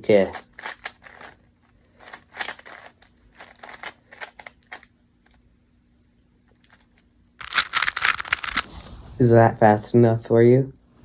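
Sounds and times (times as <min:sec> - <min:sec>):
puzzle cube clicking: 0:07.4 - 0:08.8.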